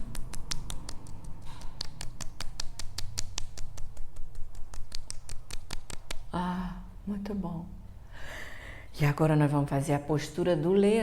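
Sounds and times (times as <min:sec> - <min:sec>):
fingertips patting face: 0:00.0 - 0:06.4.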